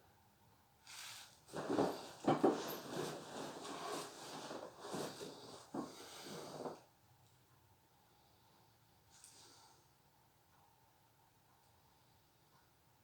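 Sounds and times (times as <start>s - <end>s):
bedding rustling: 1.5s - 6.8s.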